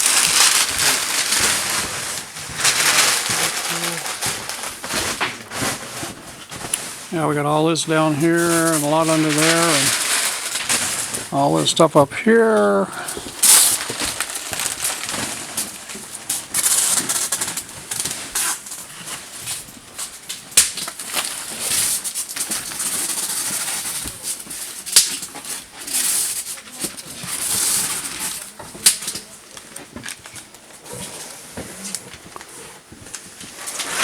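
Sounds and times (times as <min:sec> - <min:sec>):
rustling: 0:00.0 - 0:34.0.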